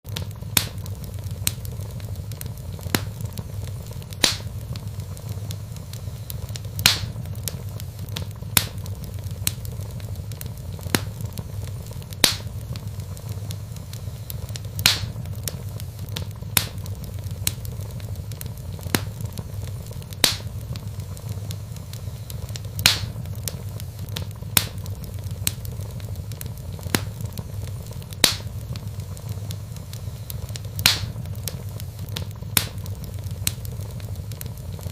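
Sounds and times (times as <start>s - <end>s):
fire crackling and popping: 0.0s - 34.9s
low rumble of flames: 0.0s - 34.9s.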